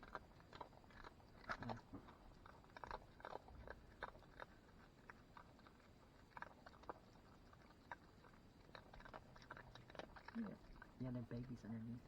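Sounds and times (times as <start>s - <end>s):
animal chewing crunchy food: 0.0s - 12.0s.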